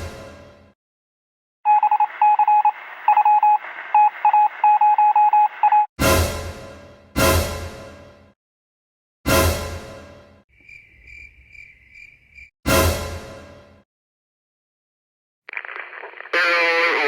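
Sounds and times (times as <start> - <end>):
morse-like radio beeps: 1.7 - 5.9.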